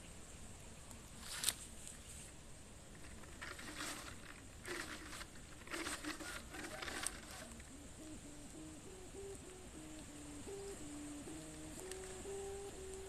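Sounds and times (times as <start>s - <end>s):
kite hummer droning: 2.9s - 13.0s.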